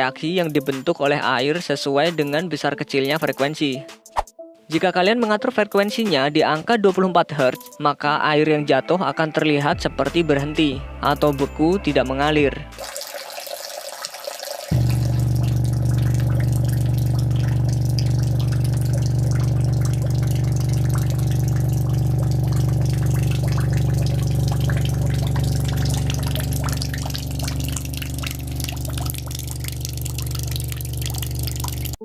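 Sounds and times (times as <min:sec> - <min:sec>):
water spattering into bucket: 0:12.8 - 0:32.0
low buzzing subwoofer tone: 0:14.7 - 0:32.0.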